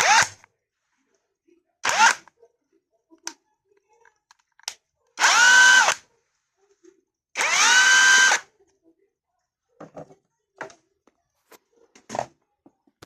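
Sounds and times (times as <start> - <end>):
cordless drill motor whining: 0.0 - 0.3, 1.8 - 2.2, 5.2 - 6.0, 7.4 - 8.4.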